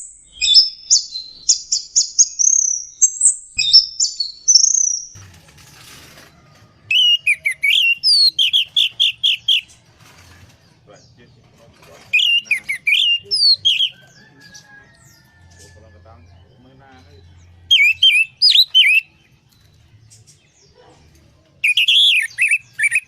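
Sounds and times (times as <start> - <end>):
thrush singing: 16.0 - 20.4.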